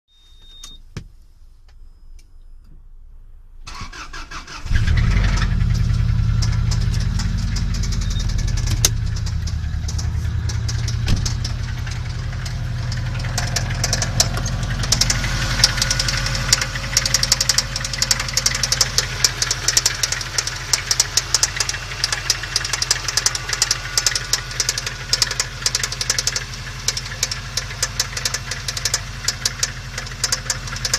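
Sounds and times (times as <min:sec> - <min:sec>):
engine cranking: 0:03.7 - 0:30.9
car engine running: 0:04.6 - 0:30.9
fast engine knocking: 0:06.1 - 0:30.9.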